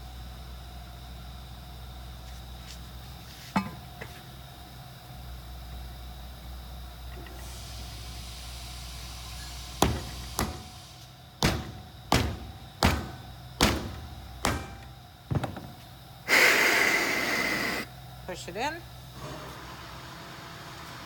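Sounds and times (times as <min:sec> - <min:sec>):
metal parts knocking together: 0:11.4 - 0:15.9.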